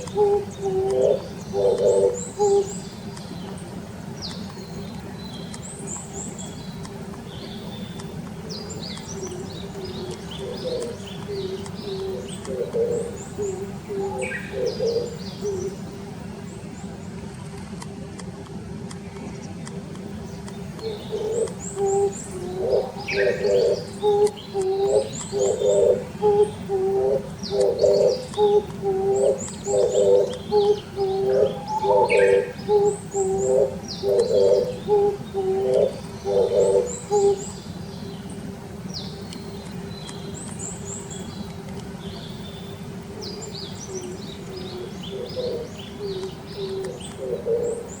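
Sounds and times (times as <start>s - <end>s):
dove cooing: 0.0s - 3.0s, 7.7s - 15.9s, 20.6s - 37.6s, 43.0s - 48.0s
small birds chirping: 0.0s - 48.0s.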